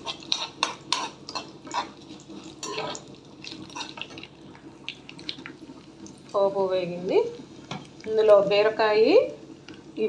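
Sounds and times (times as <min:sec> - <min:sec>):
seeds frying in oil: 0:00.0 - 0:10.0.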